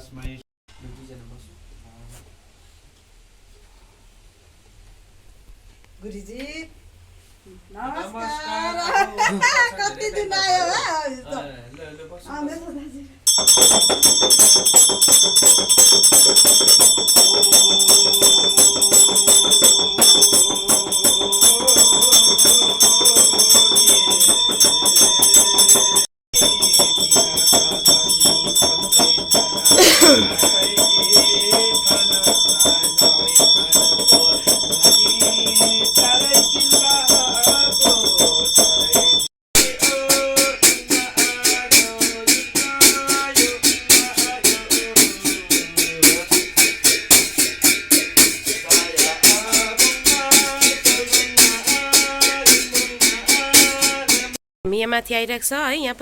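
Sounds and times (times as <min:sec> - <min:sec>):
hand bell rung rapidly: 0:13.3 - 0:54.4
rattling jingling percussion: 0:13.3 - 0:54.4.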